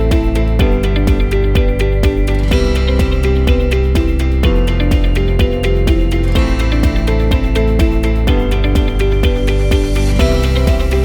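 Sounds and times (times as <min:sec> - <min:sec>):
instrumental music with plucked guitar: 0:00.0 - 0:11.0.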